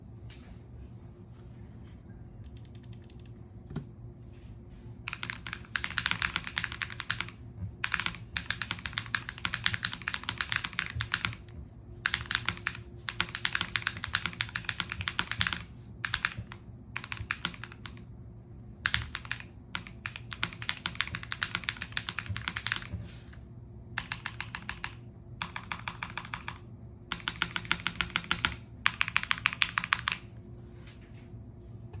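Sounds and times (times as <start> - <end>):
mechanical keyboard typing: 2.4 - 3.4, 5.1 - 18.1, 18.8 - 22.9, 24.0 - 30.3.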